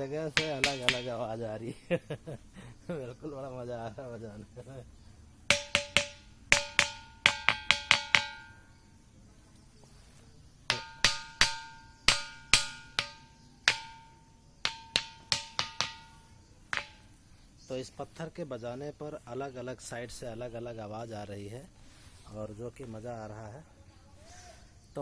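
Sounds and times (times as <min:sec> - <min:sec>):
stone striking ringing rock: 0:00.3 - 0:01.4, 0:05.5 - 0:08.9, 0:10.7 - 0:17.2.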